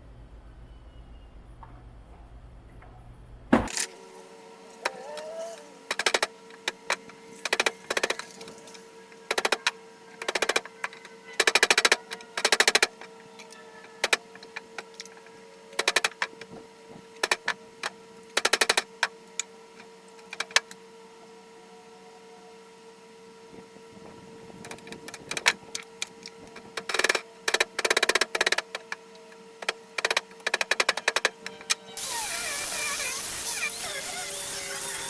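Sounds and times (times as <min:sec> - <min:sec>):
hydraulic pump clattering: 0:23.5 - 0:28.5.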